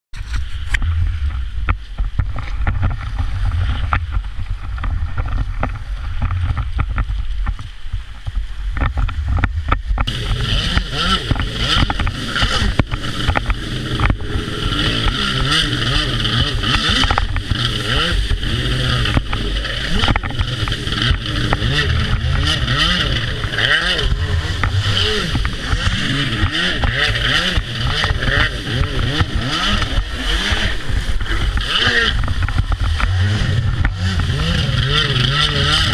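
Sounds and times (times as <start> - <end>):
wind buffeting microphone: 0.2 - 35.9
jet ski engine revving: 9.2 - 35.9.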